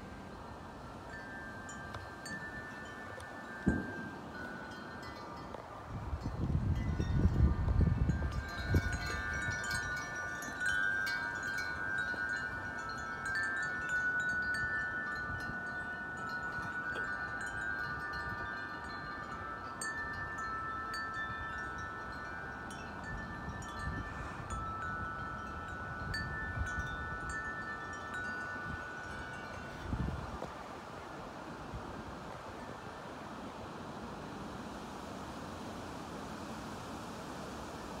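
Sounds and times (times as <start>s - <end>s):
wind chimes ringing: 0.0s - 30.5s
wind gusts on microphone: 0.0s - 38.0s.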